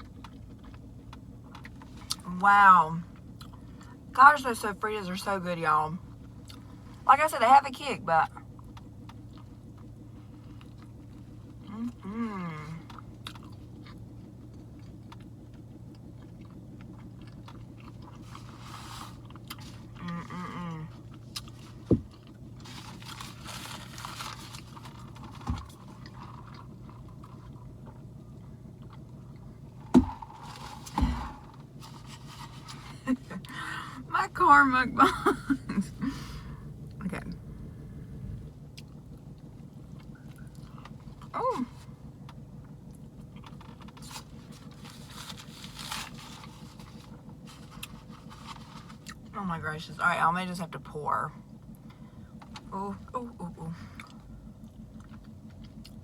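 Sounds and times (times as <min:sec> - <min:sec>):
biting and chewing: 0:00.0 - 0:02.3, 0:03.1 - 0:04.1, 0:06.1 - 0:07.0, 0:08.4 - 0:33.8, 0:35.4 - 0:49.3, 0:53.9 - 0:56.0
steady low hum: 0:00.0 - 0:56.0
wrapper rustling and crinkling: 0:22.6 - 0:26.3, 0:44.0 - 0:49.0.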